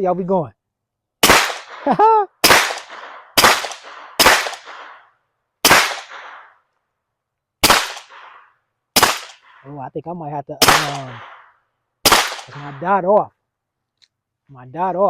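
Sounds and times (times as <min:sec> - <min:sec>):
suppressed pistol shots: 0:01.2 - 0:06.6, 0:07.6 - 0:09.7, 0:10.6 - 0:12.8.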